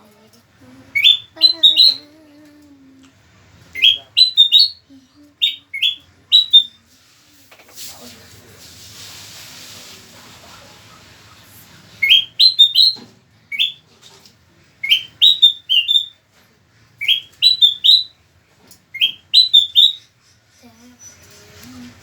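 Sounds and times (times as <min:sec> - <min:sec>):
bird singing whistled notes: 0:01.0 - 0:02.0, 0:03.8 - 0:04.8, 0:05.4 - 0:06.8, 0:12.0 - 0:13.8, 0:14.8 - 0:16.2, 0:17.0 - 0:18.1, 0:19.0 - 0:20.0.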